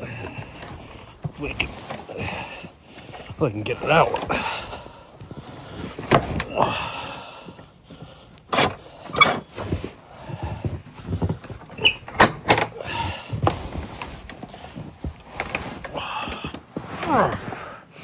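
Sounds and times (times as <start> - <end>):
equipment clunks and knocks: 8.5 - 9.6.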